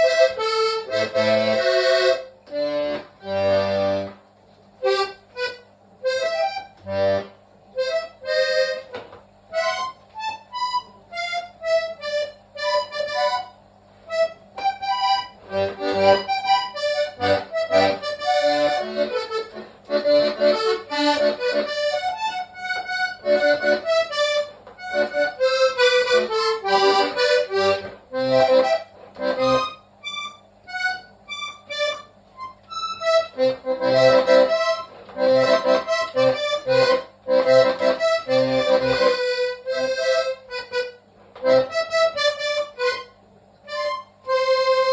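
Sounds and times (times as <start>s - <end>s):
button accordion melody: 0.0s - 4.2s, 4.8s - 44.9s.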